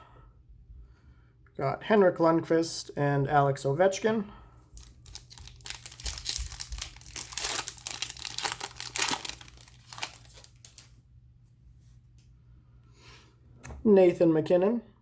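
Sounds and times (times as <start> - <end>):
foil wrapper tearing and crinkling: 4.7 - 11.0.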